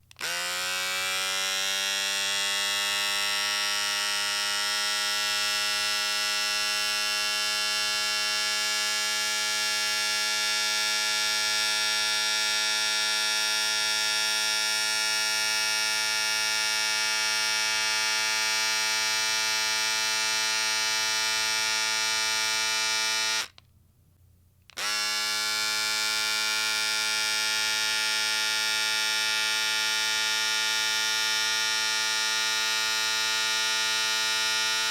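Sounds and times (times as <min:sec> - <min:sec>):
electric shaver buzzing: 0:00.1 - 0:23.6, 0:24.8 - 0:34.9.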